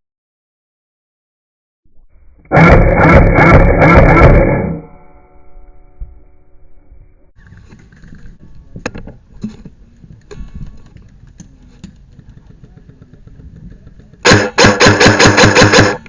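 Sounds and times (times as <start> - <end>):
faint knocks and handling noise: 7.4 - 14.2
airsoft gun full-auto burst: 14.2 - 16.0.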